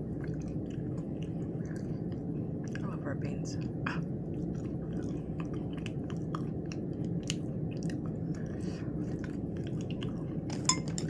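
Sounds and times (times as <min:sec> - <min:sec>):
person chewing food: 0:00.0 - 0:02.8, 0:03.6 - 0:11.0
wet mouth smacks: 0:05.4 - 0:08.4.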